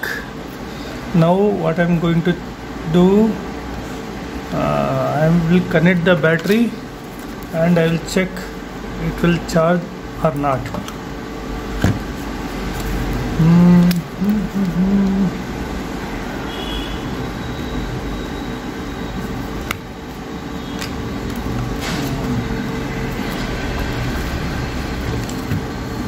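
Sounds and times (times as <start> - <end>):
low workshop hum: 0.0 - 26.0
man humming hmm: 13.3 - 15.5.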